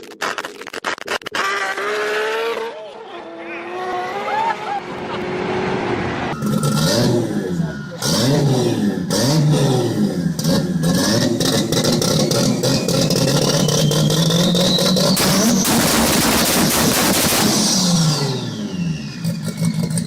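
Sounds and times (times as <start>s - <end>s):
car engine revving: 1.3s - 20.0s
rising engine whine: 3.1s - 20.0s
exhaust popping and banging: 10.3s - 18.0s.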